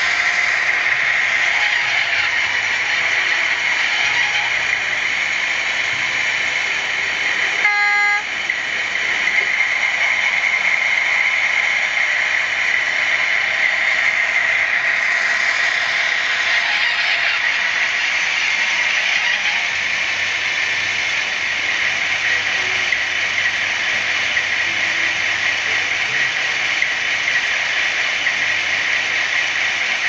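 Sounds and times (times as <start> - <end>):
model diesel engine sound: 0.0 - 30.0
short horn toot: 7.6 - 8.3.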